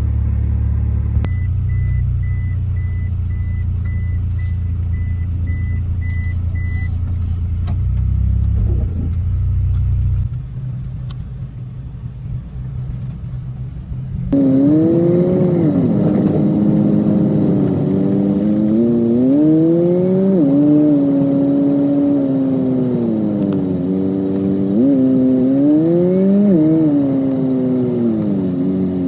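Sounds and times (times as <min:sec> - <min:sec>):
car engine rumbling: 0:00.0 - 0:29.0
engine accelerating: 0:14.3 - 0:29.0.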